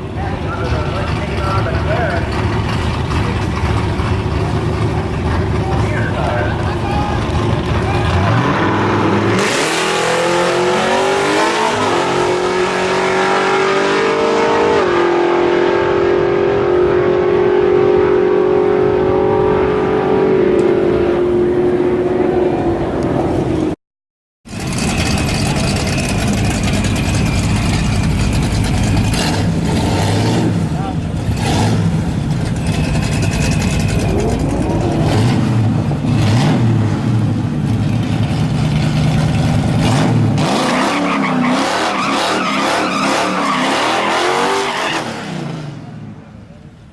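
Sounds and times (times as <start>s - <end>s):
engine running steadily: 0.0s - 8.5s, 24.5s - 40.0s
car engine revving hard: 8.0s - 22.1s, 28.7s - 37.4s, 39.6s - 45.7s.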